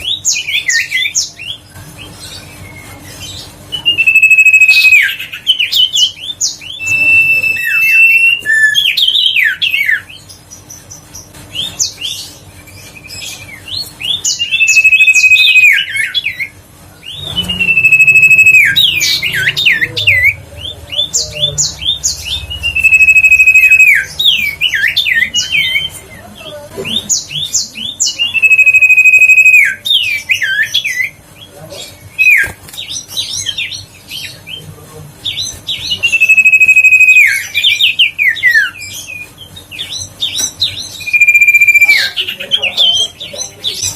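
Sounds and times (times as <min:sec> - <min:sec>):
bird whistling and chirping: 0:03.7 - 0:10.1, 0:12.9 - 0:26.0, 0:27.1 - 0:31.2, 0:35.4 - 0:43.1.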